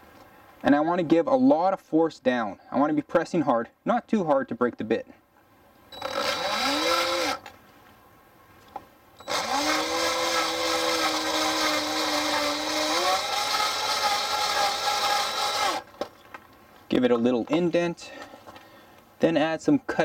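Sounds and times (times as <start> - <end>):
cordless drill boring into steel: 5.9 - 7.5, 9.2 - 15.9.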